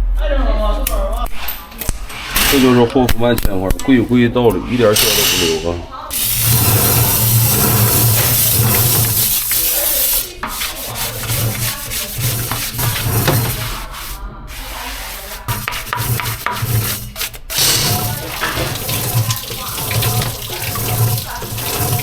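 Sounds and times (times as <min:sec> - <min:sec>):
rubber being sanded: 0:06.1 - 0:22.0.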